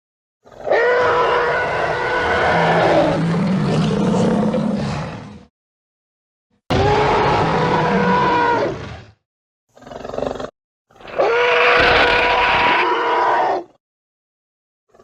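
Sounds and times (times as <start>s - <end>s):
cartoon monster roaring: 0.6s - 5.3s, 6.7s - 9.1s, 11.0s - 13.8s.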